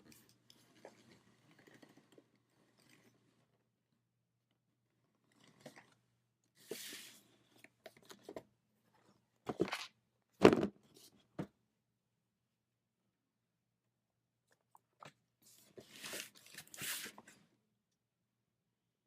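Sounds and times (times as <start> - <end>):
cardboard box knocks and thumps: 10.4 - 10.7
paper packaging rustling: 15.7 - 17.4.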